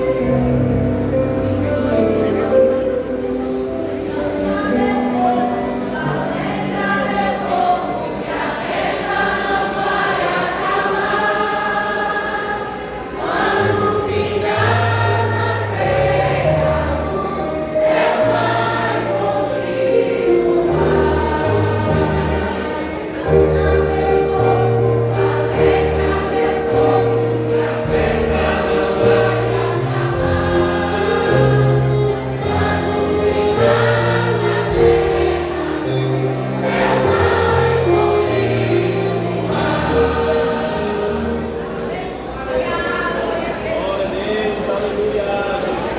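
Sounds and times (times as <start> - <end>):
vocal group singing a hymn: 0.0 - 45.9
instrumental accompaniment: 13.2 - 42.6.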